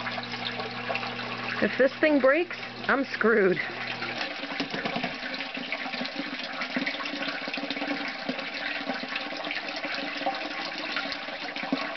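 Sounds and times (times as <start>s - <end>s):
water gushing and splashing: 0.0s - 11.9s.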